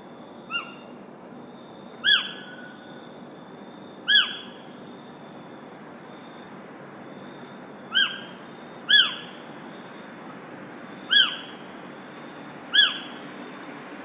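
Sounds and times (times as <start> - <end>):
bird calling: 2.0 - 2.7, 4.1 - 4.6, 7.9 - 8.3, 8.9 - 9.4, 11.1 - 11.6, 12.7 - 13.2.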